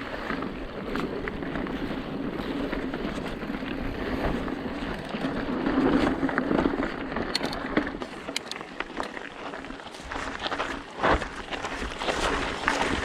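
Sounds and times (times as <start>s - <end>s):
wind on microphone: 0.0s - 8.3s
bike tyres rumbling on dirt: 0.0s - 13.0s
sharp clicks and rattles: 4.8s - 9.2s.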